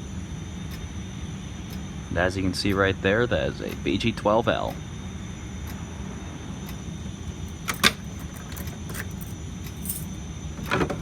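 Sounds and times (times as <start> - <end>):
low background hum: 0.0 - 11.0
faint ticks: 0.6 - 1.0, 5.6 - 5.9.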